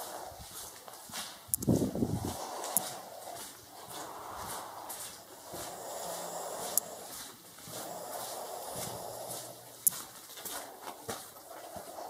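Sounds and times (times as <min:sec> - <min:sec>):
sharp click: 0:01.5 - 0:01.7
person breathing heavily: 0:01.8 - 0:09.9, 0:11.4 - 0:12.0.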